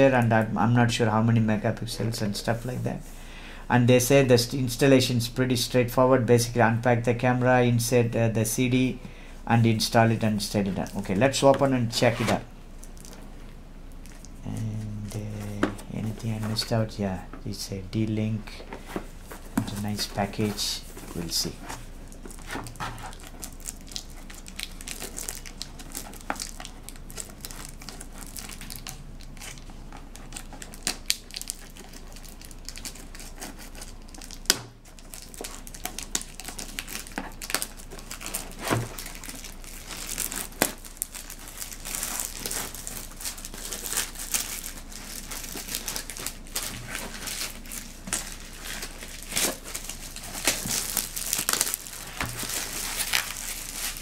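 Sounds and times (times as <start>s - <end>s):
wrapping crinkling and rustling: 9.7s - 17.0s, 18.4s - 54.0s.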